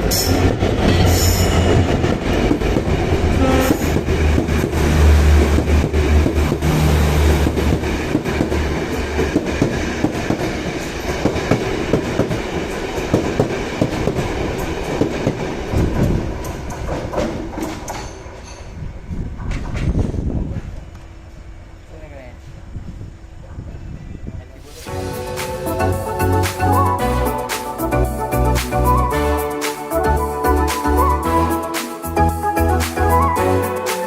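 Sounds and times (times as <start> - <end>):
diesel locomotive engine throb: 0.0 - 17.2, 24.6 - 29.4
train wheels clattering over rail joints: 0.0 - 18.8.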